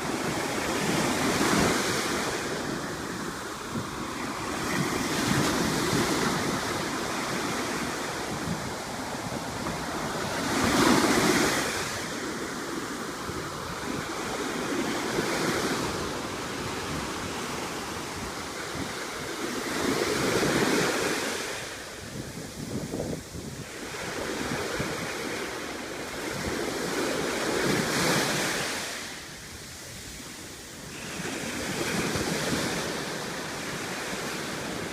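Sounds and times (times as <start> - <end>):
gentle ocean waves breaking: 0.0 - 34.9.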